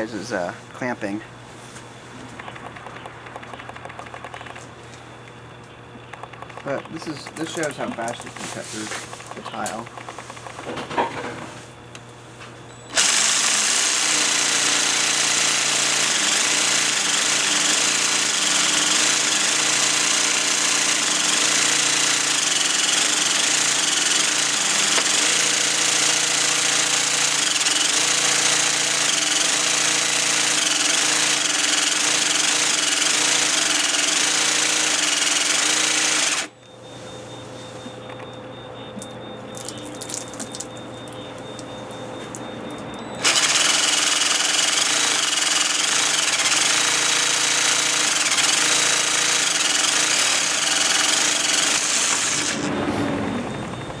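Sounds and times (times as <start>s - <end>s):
jigsaw cutting ceramic tile: 12.9s - 36.5s, 43.2s - 52.7s.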